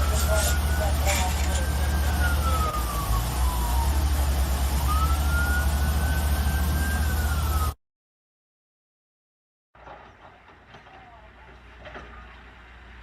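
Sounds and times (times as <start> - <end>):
heavy low rumble: 0.0 - 7.6
siren wailing: 0.0 - 7.8.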